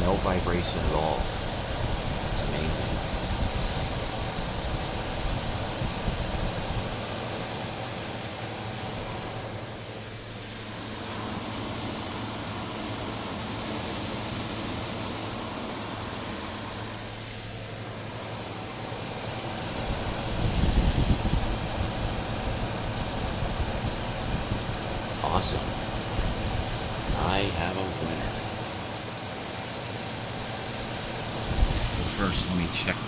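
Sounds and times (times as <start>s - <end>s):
compressor humming: 0.0s - 33.0s
dehumidifier fan blowing: 0.0s - 33.0s.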